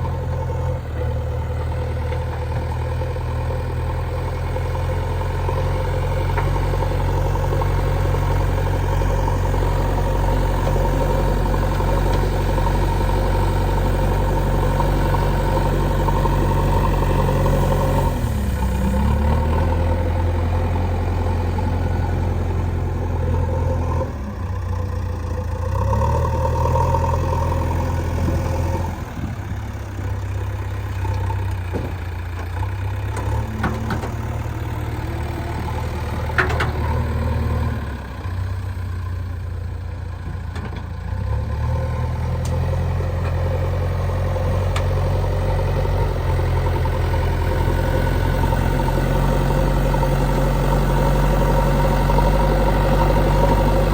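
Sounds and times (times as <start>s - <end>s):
diesel engines running: 0.0s - 53.9s.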